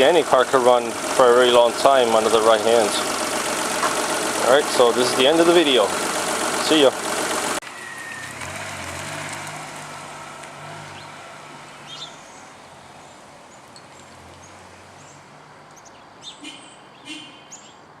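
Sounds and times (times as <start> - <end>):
low engine hum: 0.0 - 15.8
bird chirps: 11.8 - 12.6, 13.8 - 17.9.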